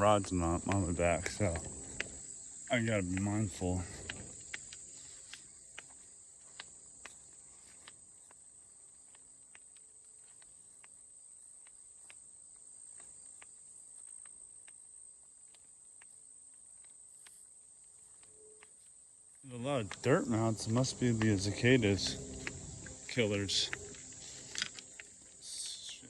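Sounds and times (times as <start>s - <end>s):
footsteps in brush: 0.0s - 26.0s
high-pitched insect chorus: 0.0s - 26.0s
twigs snapping: 22.2s - 25.7s.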